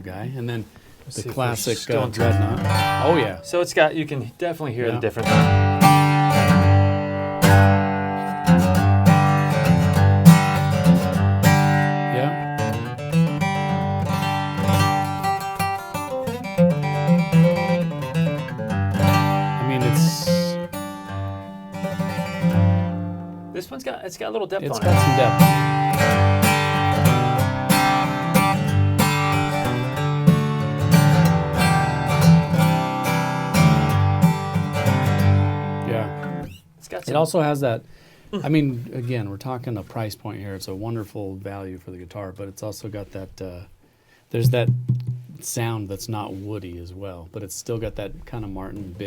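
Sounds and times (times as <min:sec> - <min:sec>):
acoustic guitar strumming chords: 0:02.0 - 0:03.6, 0:05.1 - 0:23.8, 0:24.7 - 0:36.6, 0:44.4 - 0:45.5.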